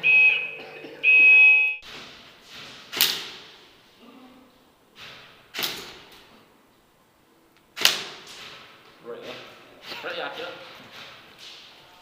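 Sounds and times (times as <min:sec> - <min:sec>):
loud buzzer tone: 0:00.0 - 0:01.8
sharp cracks in a large hall: 0:01.8 - 0:03.8, 0:05.0 - 0:06.3, 0:07.7 - 0:11.8.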